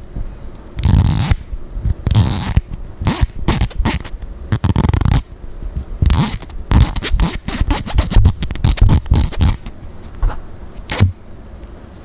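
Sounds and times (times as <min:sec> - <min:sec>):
comb teeth scraping: 0:00.8 - 0:05.3, 0:06.0 - 0:09.8.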